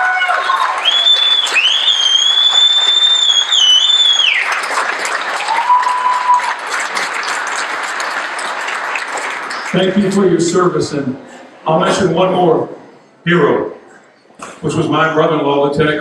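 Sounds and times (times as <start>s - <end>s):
crowd applauding: 0.0s - 10.6s
high whistle: 0.8s - 4.5s.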